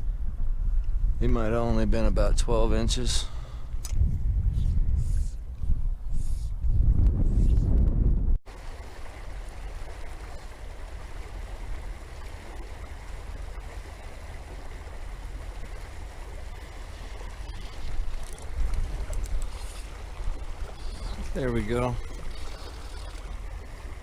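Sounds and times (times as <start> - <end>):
wind rumbling on microphone: 0.0 - 24.0
river water rushing: 8.5 - 24.0.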